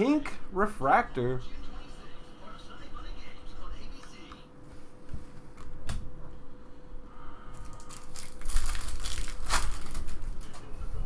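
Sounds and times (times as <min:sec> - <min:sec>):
wrapper crinkling and crackling: 0:07.6 - 0:10.6.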